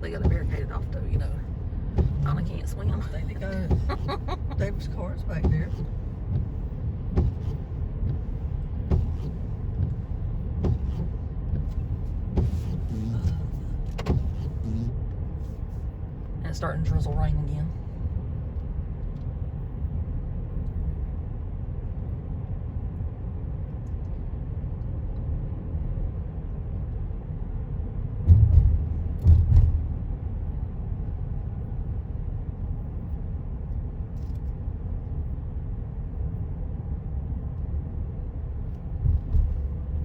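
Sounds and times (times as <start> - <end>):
car engine and tyre rumble: 0.0 - 40.0
heavy low thumps: 0.1 - 15.1, 28.2 - 30.2, 38.9 - 40.0.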